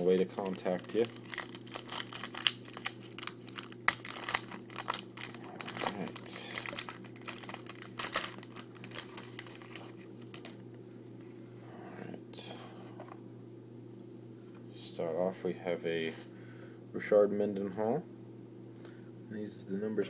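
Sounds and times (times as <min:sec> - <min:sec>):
card packaging crinkling: 0:00.0 - 0:10.6
faint electrical hum: 0:00.0 - 0:20.0.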